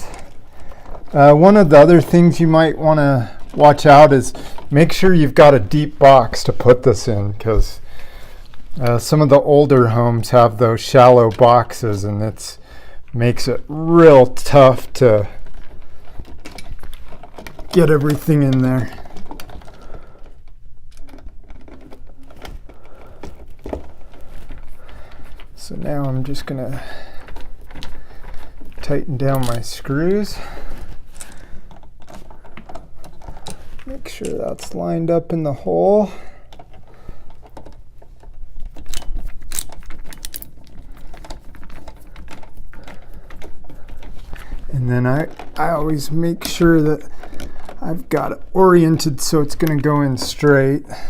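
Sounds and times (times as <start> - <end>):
wires and switch clicking and scraping: 0.0 - 51.0
screwdriver clicking and rattling: 36.5 - 47.8.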